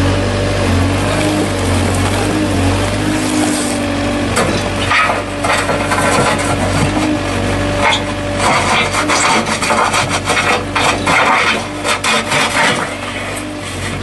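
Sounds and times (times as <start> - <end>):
engine running: 0.0 - 14.0
scraping strokes: 4.8 - 7.2, 7.8 - 14.0.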